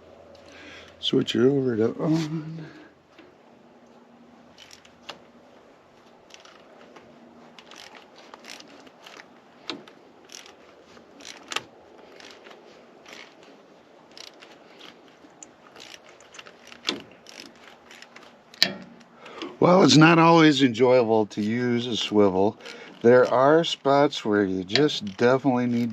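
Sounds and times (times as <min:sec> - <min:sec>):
hand ratchet clicking: 0:04.6 - 0:05.2, 0:06.3 - 0:06.7, 0:07.6 - 0:19.4, 0:21.4 - 0:25.9.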